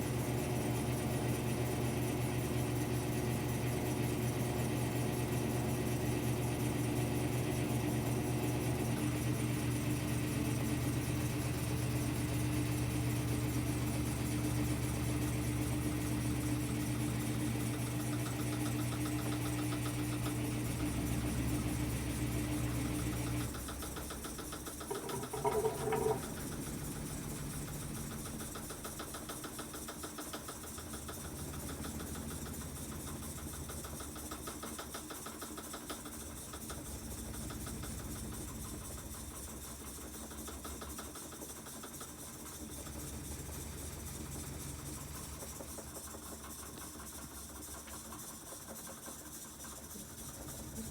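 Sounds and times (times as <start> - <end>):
washing machine humming: 0.0 - 29.0.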